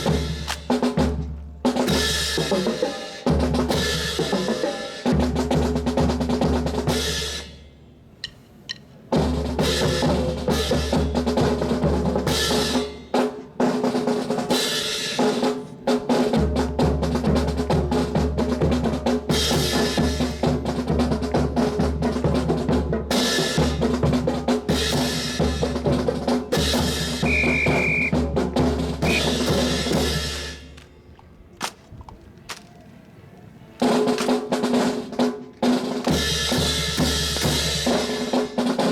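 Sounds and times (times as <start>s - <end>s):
marching snare and bass drums: 0.0s - 7.6s, 8.2s - 30.8s, 33.8s - 38.9s
sharp clacks: 0.4s - 0.8s, 8.2s - 9.0s, 30.7s - 32.8s, 33.8s - 34.6s.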